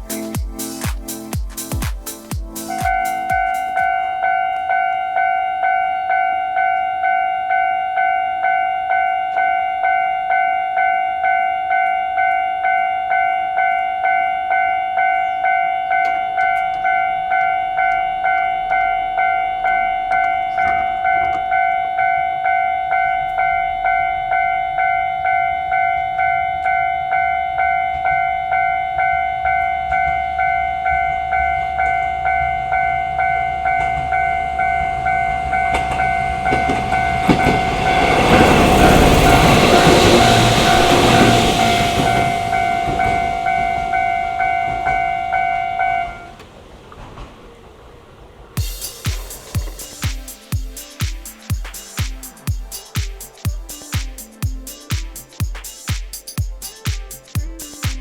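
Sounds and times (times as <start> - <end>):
train rumble: 0.0 - 5.2, 13.1 - 51.4.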